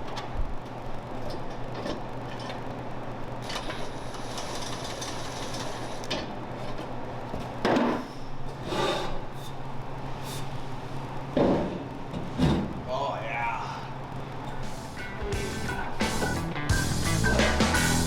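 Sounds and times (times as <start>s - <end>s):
steady hum: 0.0s - 18.0s
tools scraping on parts: 3.4s - 6.8s.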